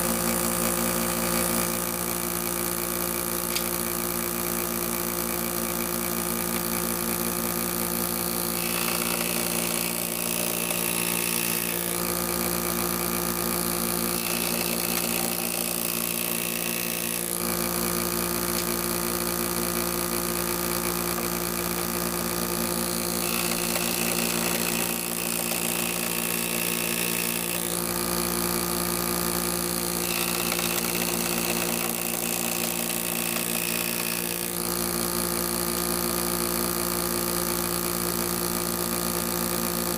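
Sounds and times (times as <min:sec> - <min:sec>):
power tool motor hum: 0:00.0 - 0:39.9.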